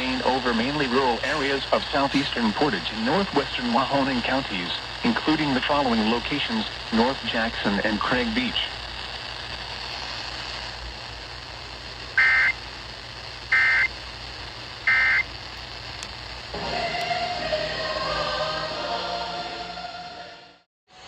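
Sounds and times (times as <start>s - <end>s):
steady background hiss: 0.0s - 20.0s
music: 16.5s - 21.0s.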